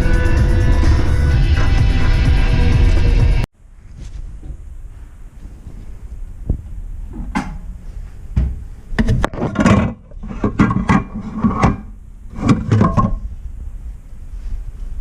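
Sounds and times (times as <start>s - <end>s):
tools clicking clunking and scraping: 8.4s - 13.3s.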